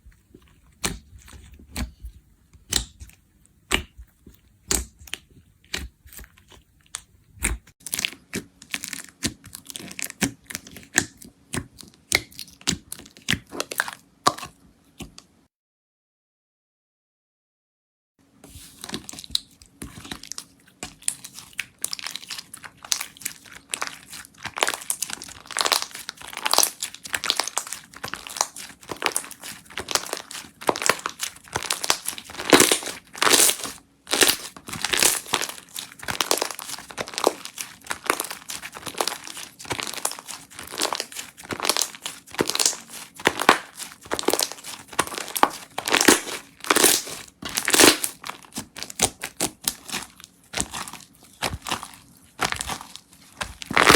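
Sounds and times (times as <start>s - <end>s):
slime crackling: 18.8s - 53.9s.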